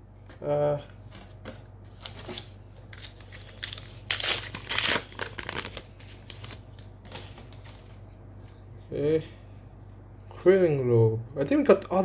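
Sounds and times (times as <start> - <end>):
foil wrapper crinkling and tearing: 2.9 - 6.7.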